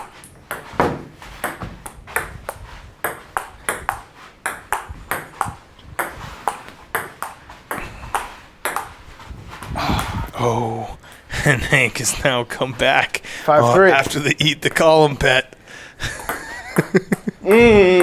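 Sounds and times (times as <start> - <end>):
table tennis ball clicking: 1.4 - 9.0.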